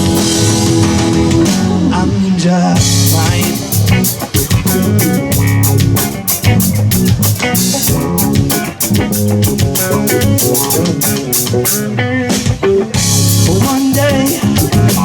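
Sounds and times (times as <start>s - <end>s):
drum kit beat: 0.0s - 2.1s, 2.8s - 15.0s
bass guitar: 0.0s - 15.0s
electric guitar: 0.0s - 15.0s.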